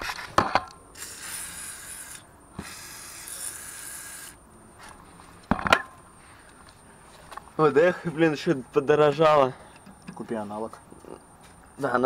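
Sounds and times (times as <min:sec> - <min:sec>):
aerosol spray hissing: 0:01.0 - 0:04.4.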